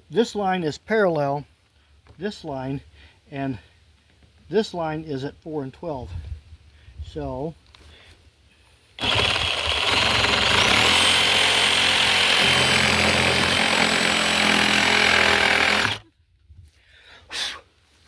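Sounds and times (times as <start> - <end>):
power saw cutting wood: 9.0 - 16.1.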